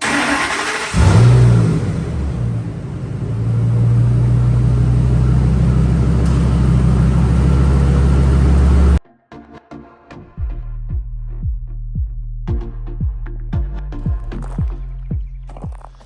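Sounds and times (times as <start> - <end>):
vehicle engine idling: 0.0 - 9.0.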